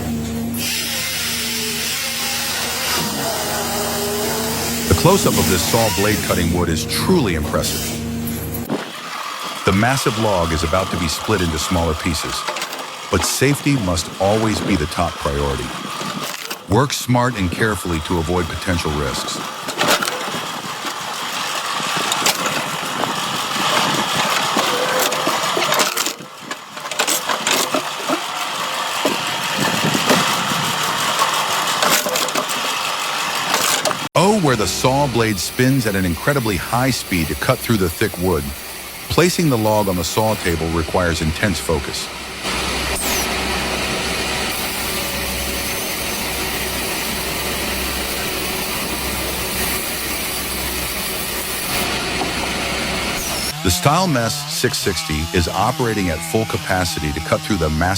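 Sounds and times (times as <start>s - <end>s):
machine engine running: 0.0s - 26.1s, 26.8s - 57.9s
saw blade cutting through log: 0.5s - 16.8s, 17.4s - 57.9s.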